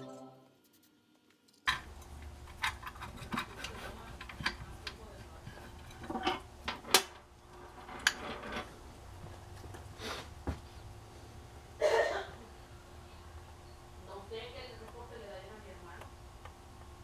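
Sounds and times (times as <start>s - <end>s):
background music: 0.0s - 0.6s.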